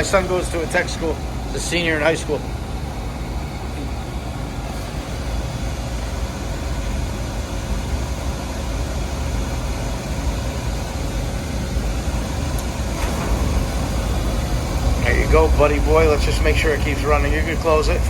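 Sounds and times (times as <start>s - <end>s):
oil burner rumbling: 0.0s - 18.0s.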